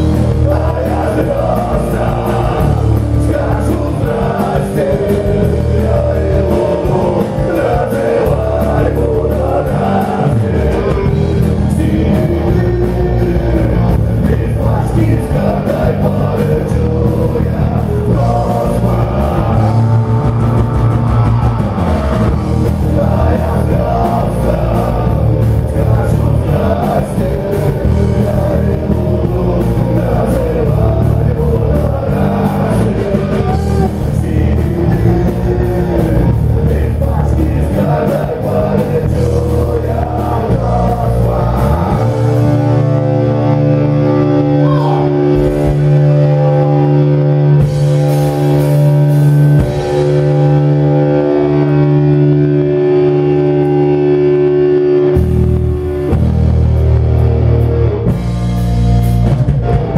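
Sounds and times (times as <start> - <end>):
person singing: 0.0 - 47.3
rock band playing: 0.0 - 59.9.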